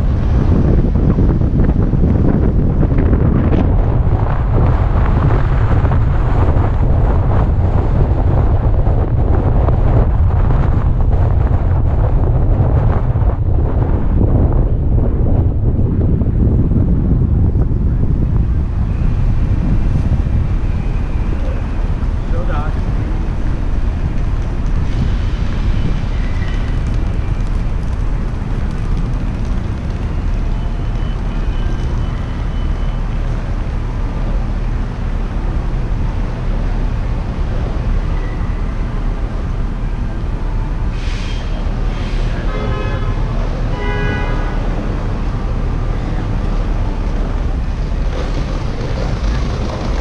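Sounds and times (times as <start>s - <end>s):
city street traffic rumble: 0.0s - 50.0s
vehicle horn: 42.3s - 44.8s.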